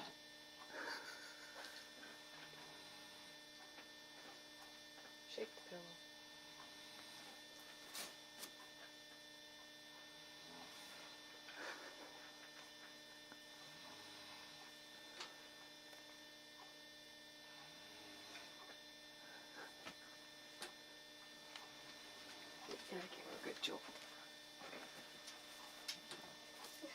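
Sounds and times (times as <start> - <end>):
electrical hum: 0.0 - 26.9
person snoring softly: 10.4 - 12.2, 13.5 - 15.6.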